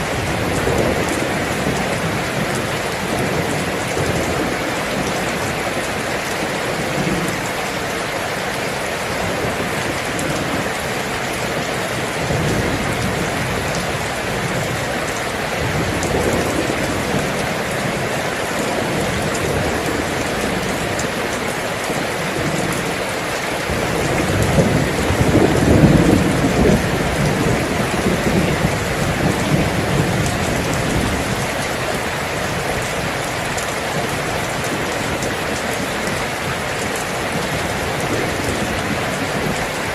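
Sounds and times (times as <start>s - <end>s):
steady rain falling: 0.0s - 39.9s
rolling thunder: 23.7s - 32.1s.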